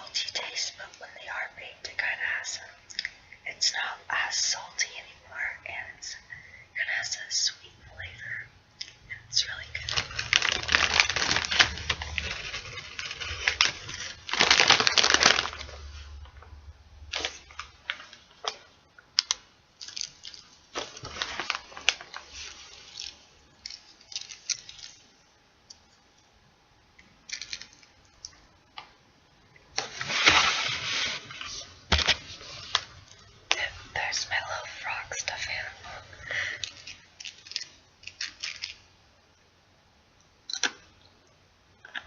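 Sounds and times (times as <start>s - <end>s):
chip bag crinkling: 8.8s - 16.4s, 19.2s - 25.2s, 27.2s - 28.5s, 29.8s - 38.9s.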